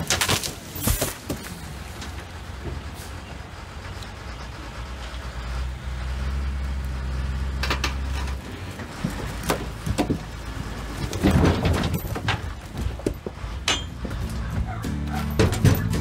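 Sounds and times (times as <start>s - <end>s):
vehicle engine rumbling: 0.0s - 16.0s
sharp knocks and clatters: 7.5s - 16.0s.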